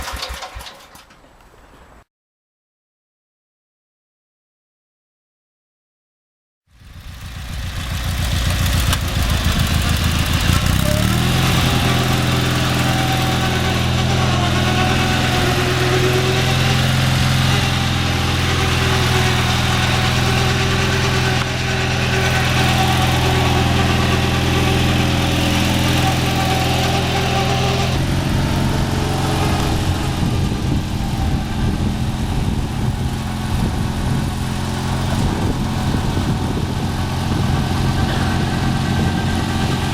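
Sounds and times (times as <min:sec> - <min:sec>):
engine running unevenly: 0:06.7 - 0:39.9.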